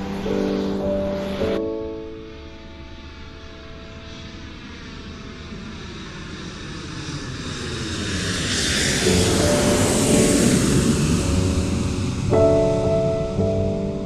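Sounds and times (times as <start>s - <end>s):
music: 0.0s - 5.8s, 8.8s - 14.0s
aircraft flying past: 0.0s - 14.0s.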